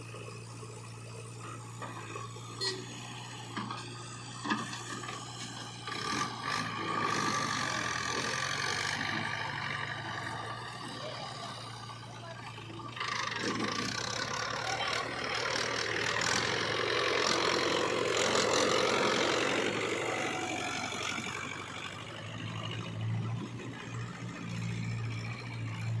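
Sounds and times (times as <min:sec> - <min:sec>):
diesel engine running: 0:00.0 - 0:26.0.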